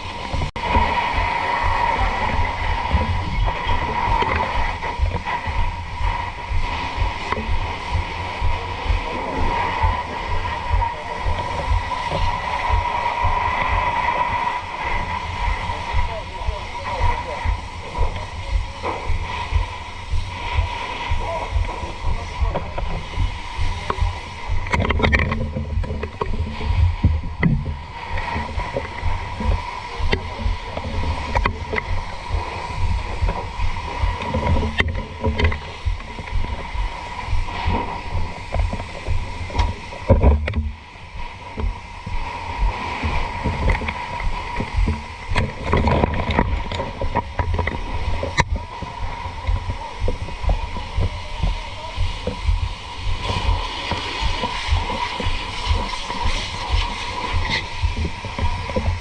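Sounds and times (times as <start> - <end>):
heavy low rumble: 0.0 - 59.0
steady high-pitched tone: 0.0 - 59.0
water rushing from fire hose: 0.0 - 59.0.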